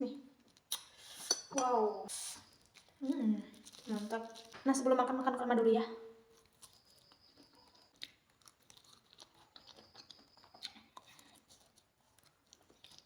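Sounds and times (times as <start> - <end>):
faint chewing: 0.3 - 1.4, 2.1 - 5.2, 6.1 - 13.0.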